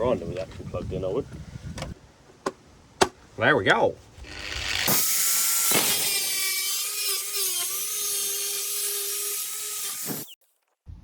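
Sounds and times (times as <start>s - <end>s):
angle grinder cutting metal: 4.2s - 10.4s.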